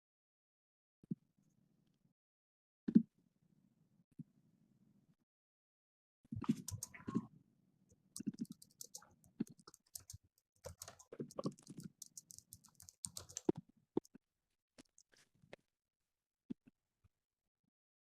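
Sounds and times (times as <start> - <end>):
clicking and tapping: 6.4 - 7.2, 8.2 - 14.1.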